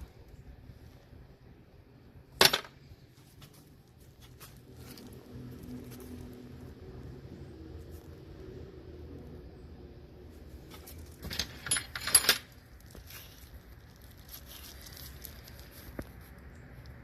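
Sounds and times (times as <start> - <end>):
sharp metallic clicks and rattles: 10.7 - 12.8.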